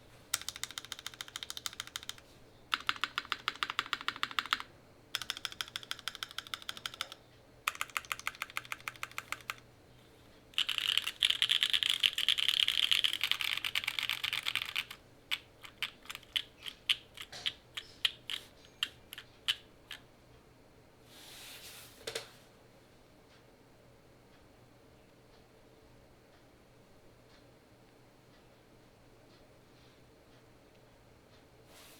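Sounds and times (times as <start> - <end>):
mechanical keyboard typing: 0.3 - 9.6, 10.6 - 20.0.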